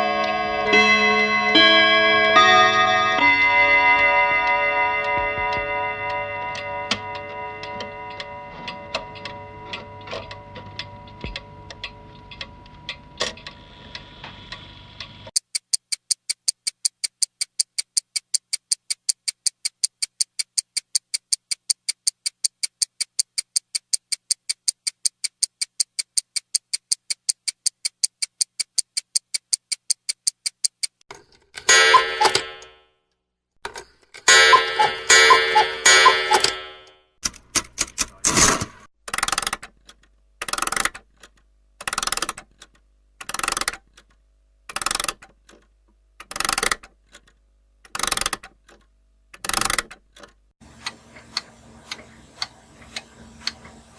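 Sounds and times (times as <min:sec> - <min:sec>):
clock ringing: 0:00.0 - 0:13.7, 0:31.6 - 0:32.8, 0:34.2 - 0:37.0
slow heavy clock ticks: 0:04.0 - 0:31.0, 0:31.6 - 0:32.8, 0:34.2 - 0:38.2, 0:50.8 - 0:53.7
rapid high-pitched clock ticking: 0:15.3 - 0:31.0, 0:31.6 - 0:32.7, 0:34.2 - 0:36.9.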